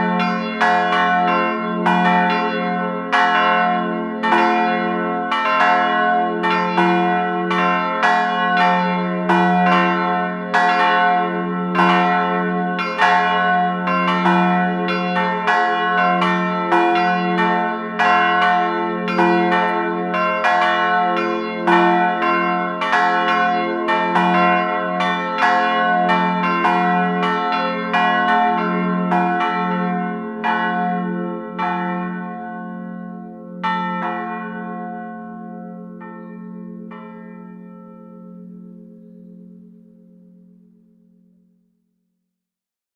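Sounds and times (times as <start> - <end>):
church bells ringing a peal: 0.0 - 41.3.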